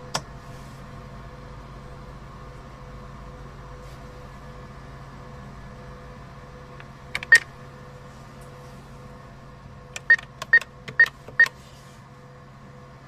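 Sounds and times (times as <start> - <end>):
keypad button clicks and beeps: 7.2 - 7.5, 10.0 - 11.6.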